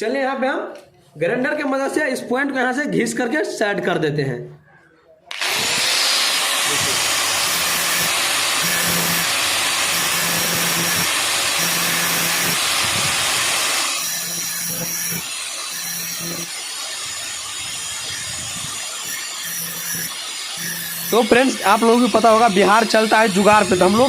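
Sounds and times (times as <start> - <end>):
grinder grinding steel: 5.3 - 24.0.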